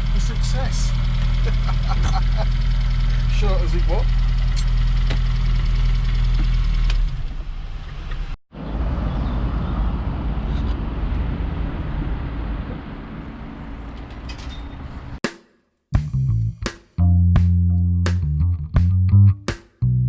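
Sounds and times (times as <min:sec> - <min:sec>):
small engine idling: 0:00.0 - 0:08.0
vehicle and road noise rushing: 0:04.6 - 0:15.2.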